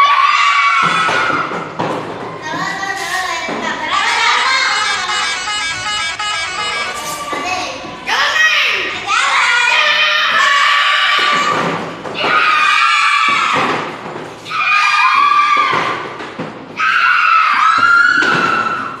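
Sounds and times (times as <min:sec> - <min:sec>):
bus multi-tone air horn: 0:04.6 - 0:07.4.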